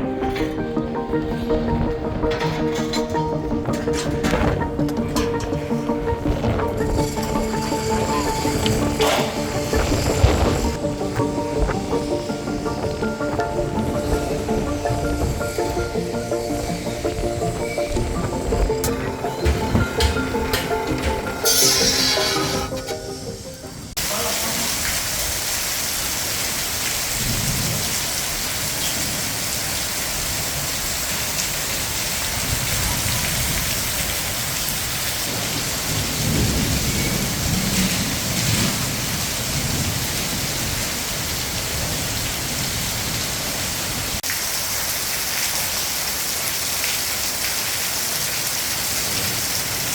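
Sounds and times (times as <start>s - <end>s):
low rumbles: 0.1s - 21.6s
steady rushing hiss: 5.8s - 24.3s.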